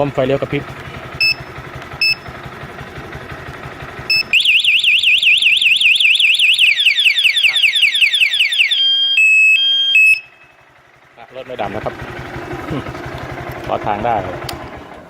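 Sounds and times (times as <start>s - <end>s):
motorcycle engine idling: 0.0s - 15.0s
motorcycle alarm siren warbling: 1.1s - 10.8s
short beeps: 1.2s - 2.3s, 4.1s - 4.5s, 8.8s - 10.6s.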